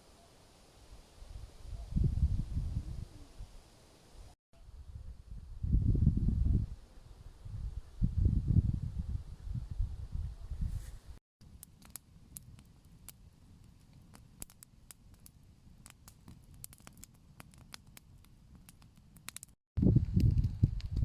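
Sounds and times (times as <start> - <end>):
campfire crackling: 11.4 - 21.0.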